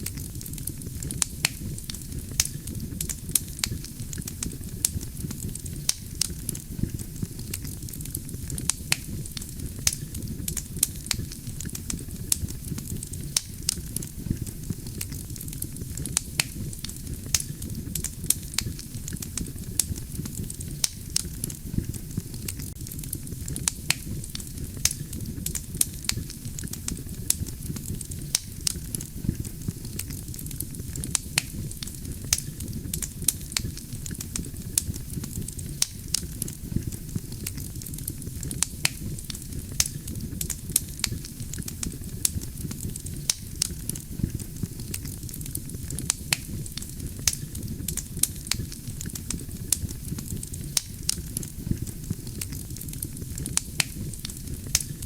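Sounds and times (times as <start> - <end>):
burning logs crackling and popping: 0.0 - 55.0
low rumble of flames: 0.0 - 55.0.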